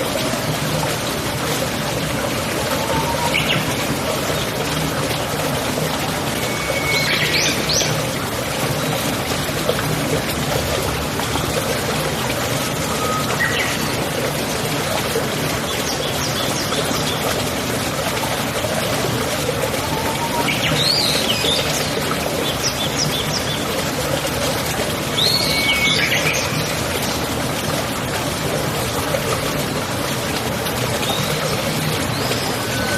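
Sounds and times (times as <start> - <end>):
stream trickling: 0.0 - 32.9.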